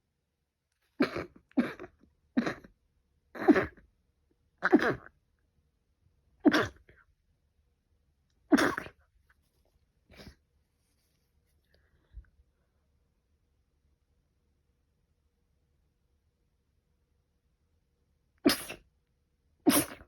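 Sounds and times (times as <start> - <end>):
person sneezing: 1.0 - 2.7, 3.4 - 3.8, 4.6 - 5.1, 6.4 - 6.8, 8.5 - 9.0, 18.4 - 18.9, 19.6 - 20.0.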